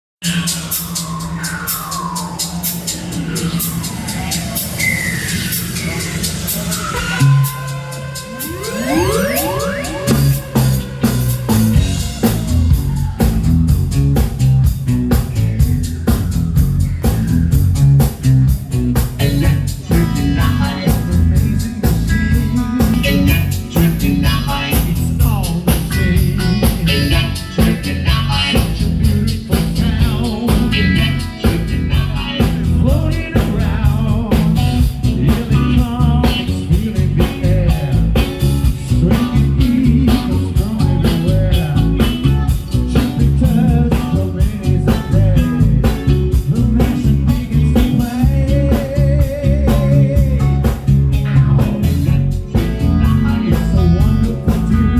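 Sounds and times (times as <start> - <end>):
electric guitar and bass: 6.4 - 54.9
person singing: 8.1 - 13.3, 19.2 - 50.8, 51.5 - 54.9.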